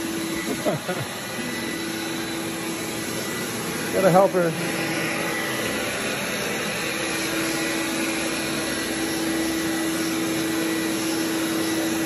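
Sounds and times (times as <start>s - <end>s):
vacuum cleaner on carpet: 0.0s - 12.0s.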